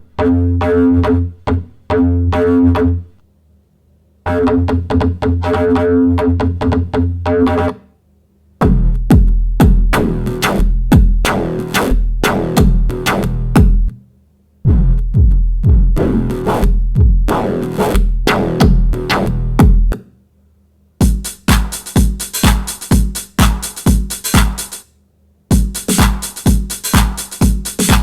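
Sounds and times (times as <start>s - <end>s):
synthesizer bass: 8.6s - 13.9s, 14.7s - 19.9s
drum machine beat: 8.6s - 14.0s, 14.7s - 20.0s, 21.0s - 24.8s, 25.5s - 28.0s.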